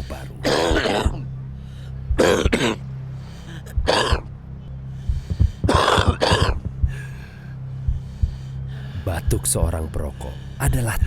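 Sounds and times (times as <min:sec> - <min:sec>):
person coughing harshly: 0:00.3 - 0:01.2, 0:02.2 - 0:02.8, 0:03.8 - 0:04.2, 0:05.7 - 0:06.7.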